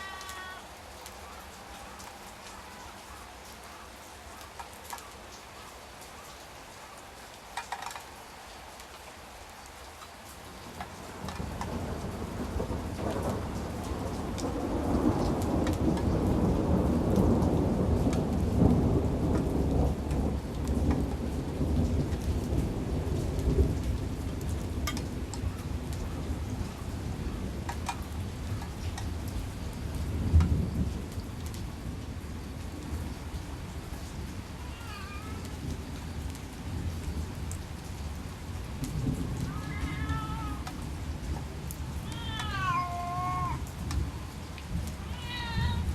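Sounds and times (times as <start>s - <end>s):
steady rain: 0.0s - 45.9s
rolling thunder: 10.9s - 45.9s.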